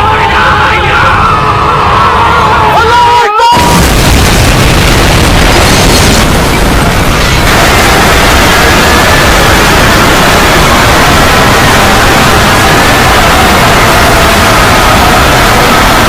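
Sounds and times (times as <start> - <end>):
cartoon explosion rumble: 3.6 - 16.0.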